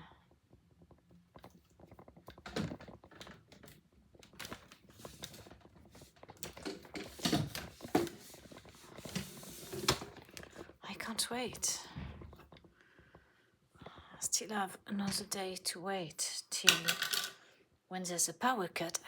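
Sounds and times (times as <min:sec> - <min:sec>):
small hard objects clattering: 0:16.7 - 0:17.4.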